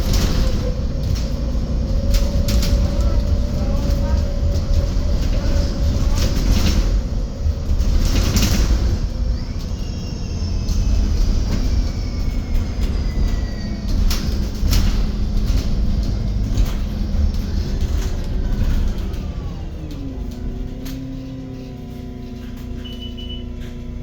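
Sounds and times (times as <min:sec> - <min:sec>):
bus drivetrain and road rumble: 0:00.0 - 0:24.0
body rattles and knocks: 0:14.0 - 0:24.0.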